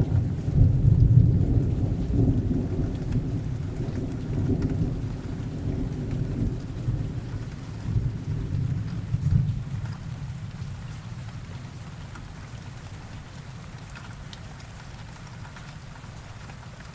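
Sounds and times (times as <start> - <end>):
low rolling thunder: 0.0 - 10.6
rain falling: 0.0 - 16.9.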